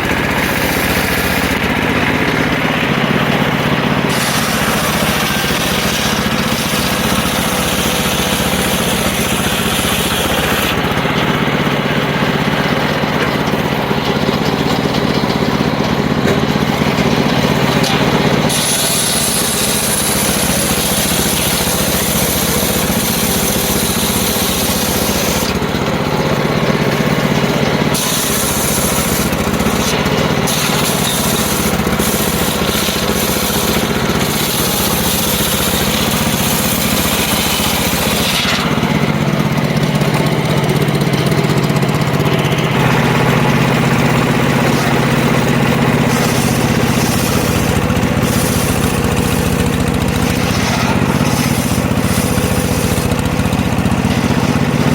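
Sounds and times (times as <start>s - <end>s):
circular saw cutting wood: 0.0s - 54.9s.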